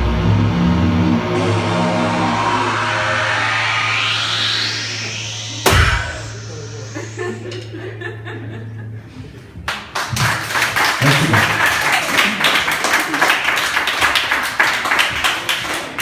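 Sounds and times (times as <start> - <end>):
music ending on held low note: 0.0 - 8.2
audience laughing: 6.7 - 9.6, 10.4 - 13.7
audience applause: 9.7 - 16.0.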